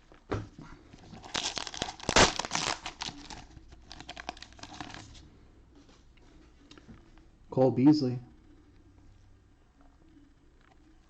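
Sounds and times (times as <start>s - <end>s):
plastic wrapper crinkling: 1.1s - 5.2s.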